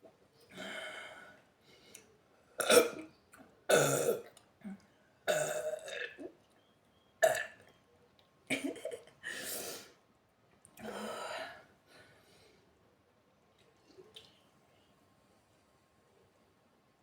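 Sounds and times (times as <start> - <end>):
woman burping: 3.7 - 4.3, 5.3 - 6.3.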